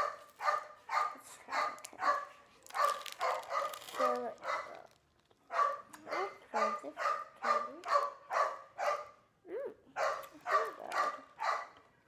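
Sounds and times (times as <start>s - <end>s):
dog barking: 0.0s - 4.9s, 5.5s - 9.2s, 10.0s - 11.8s.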